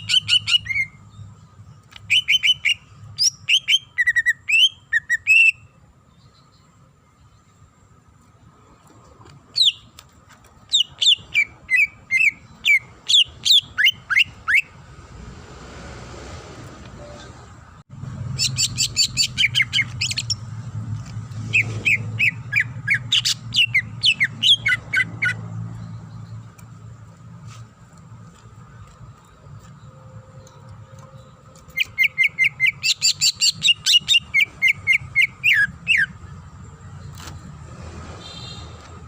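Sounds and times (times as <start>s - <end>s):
bird whistling song: 0.0s - 6.6s, 9.5s - 10.0s, 10.7s - 14.8s, 18.4s - 20.4s, 21.5s - 26.4s, 31.0s - 36.4s.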